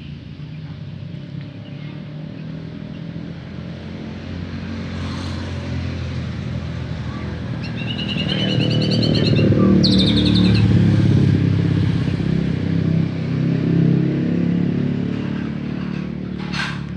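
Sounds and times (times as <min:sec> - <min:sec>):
passing vehicle engine rumble: 0:00.0 - 0:16.9
bird singing trilled phrases: 0:07.6 - 0:10.7.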